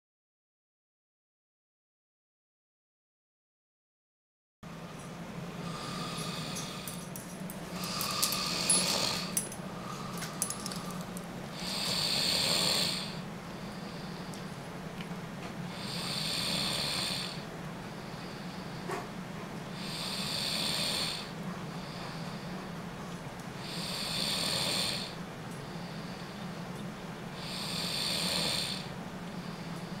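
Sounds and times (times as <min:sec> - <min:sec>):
steady low hum: 0:04.6 - 0:30.0
person snoring: 0:05.6 - 0:07.0, 0:07.8 - 0:14.2, 0:15.7 - 0:17.5, 0:19.8 - 0:21.4, 0:23.6 - 0:25.2, 0:27.4 - 0:29.0.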